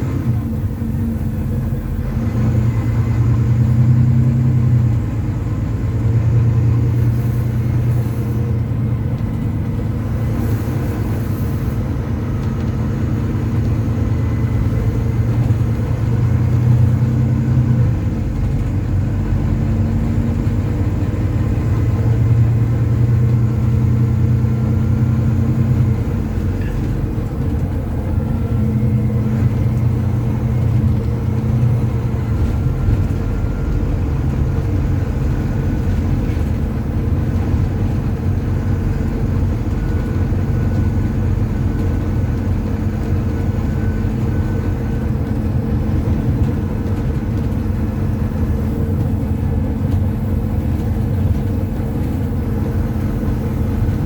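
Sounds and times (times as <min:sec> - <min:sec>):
diesel bus engine droning: 0:00.0 - 0:54.0.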